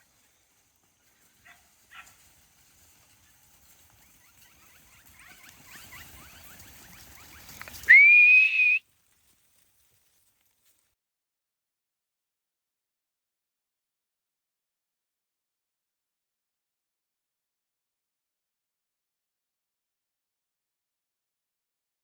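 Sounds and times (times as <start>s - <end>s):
rising whistle command: 7.8s - 8.8s.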